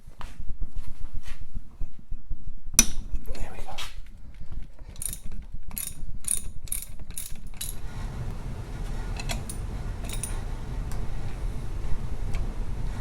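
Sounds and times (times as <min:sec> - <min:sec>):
ratchet wrench clicking: 0:04.9 - 0:07.8
steady low rumble: 0:07.7 - 0:13.0.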